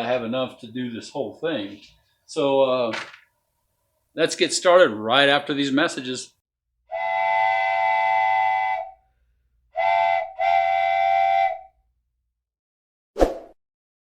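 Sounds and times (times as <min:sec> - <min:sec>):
train whistle blasts: 0:06.9 - 0:09.1, 0:09.7 - 0:11.8.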